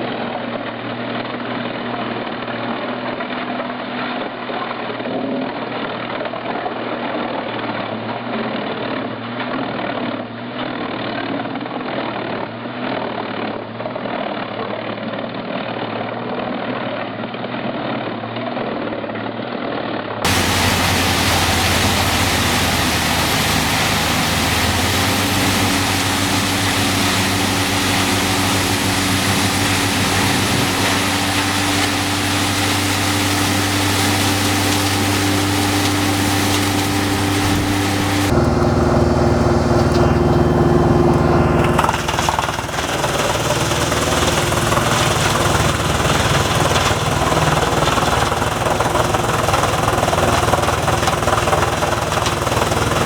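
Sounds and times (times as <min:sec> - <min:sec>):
wood chippers shredding wood: 0:20.3 - 0:53.0.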